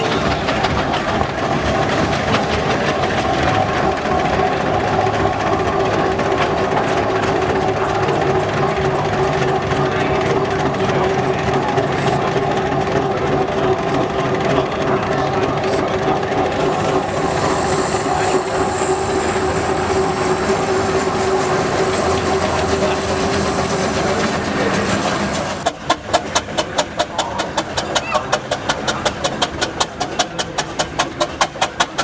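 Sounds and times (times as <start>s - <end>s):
quick regular engine beat: 0.0s - 32.0s
hiss of steam: 16.4s - 32.0s
steam whistle blowing: 16.5s - 24.2s.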